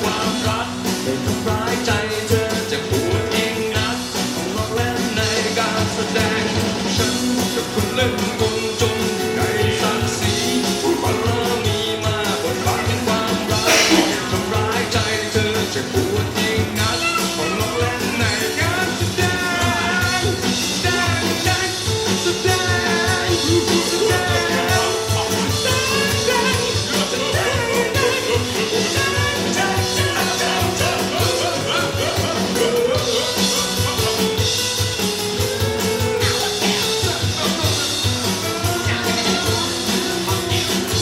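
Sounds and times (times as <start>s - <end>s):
steady drum beat: 13.6s - 14.7s.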